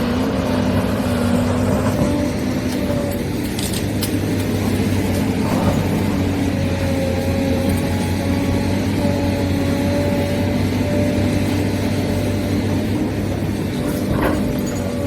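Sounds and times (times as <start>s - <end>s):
toy excavator motors humming: 0.0s - 15.0s.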